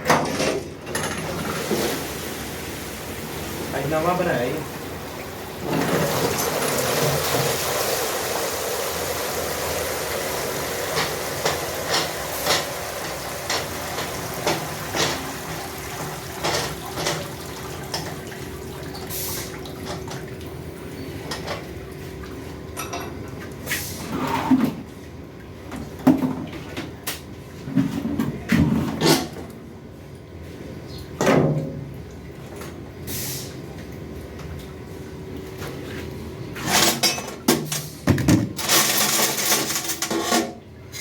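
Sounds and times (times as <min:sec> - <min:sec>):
running water: 0:01.4 - 0:20.6.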